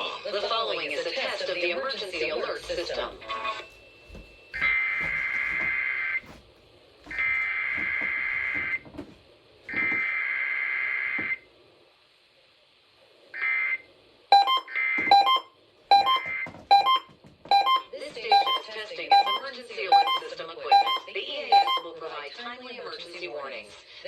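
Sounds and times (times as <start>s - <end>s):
two-tone beeps: 14.3s - 21.8s.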